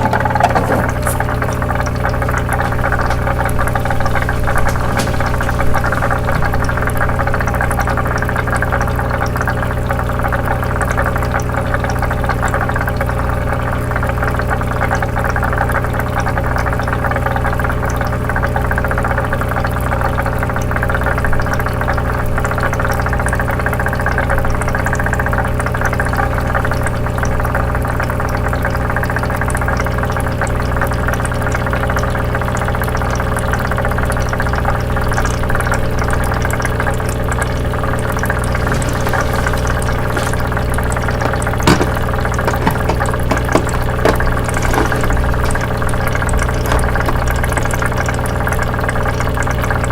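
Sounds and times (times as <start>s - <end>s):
water bubbling and gurgling: 0.0s - 18.2s, 29.0s - 49.9s
small pump humming: 0.0s - 18.6s, 31.1s - 49.9s.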